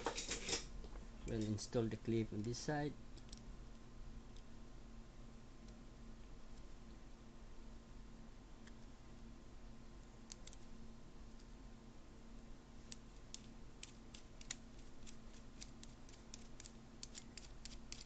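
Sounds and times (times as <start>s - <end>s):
small metal tool clicks: 12.9s - 18.0s.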